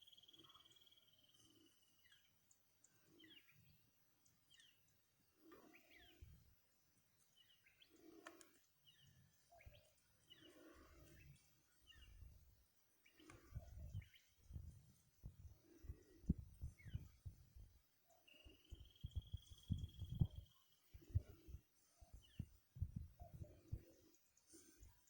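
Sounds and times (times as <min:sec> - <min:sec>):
soft low rumbles: 0:18.4 - 0:21.6.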